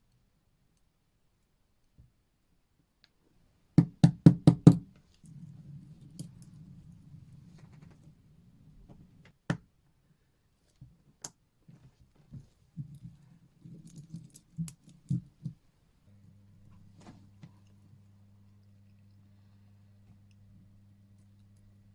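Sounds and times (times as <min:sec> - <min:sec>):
low rustle of handling: 0:05.0 - 0:09.3, 0:16.6 - 0:17.9.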